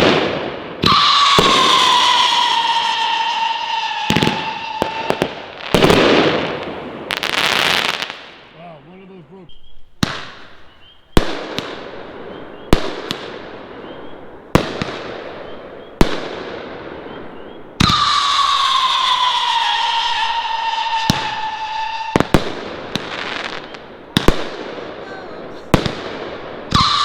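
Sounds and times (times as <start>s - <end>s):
firework crackle: 0.0s - 8.6s, 11.2s - 27.0s
sharp firework reports: 0.0s - 10.6s, 11.2s - 27.0s
firework whistle: 0.8s - 6.5s, 12.2s - 16.2s, 17.0s - 24.4s, 26.6s - 27.0s.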